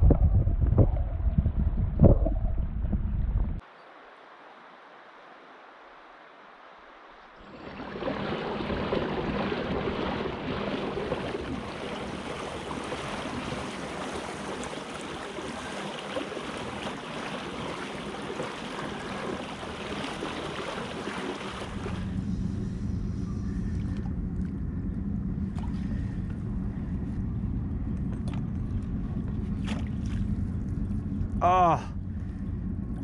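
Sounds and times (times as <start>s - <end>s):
rushing river water: 3.6s - 22.2s.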